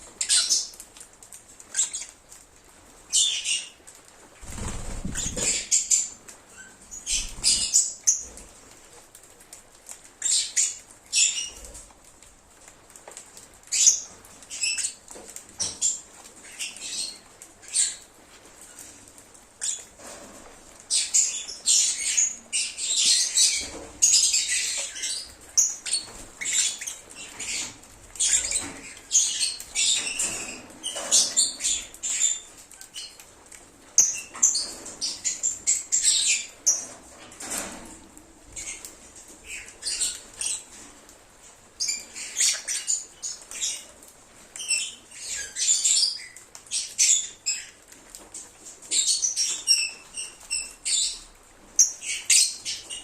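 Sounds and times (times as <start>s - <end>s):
lovebirds chirping and twittering: 0.1s - 0.8s, 1.6s - 2.3s, 3.1s - 3.8s, 4.4s - 8.6s, 10.2s - 11.8s, 13.6s - 19.0s, 19.6s - 20.2s, 20.8s - 33.2s, 34.0s - 37.6s, 38.5s - 40.9s, 41.8s - 44.0s, 44.6s - 47.9s, 48.8s - 53.0s.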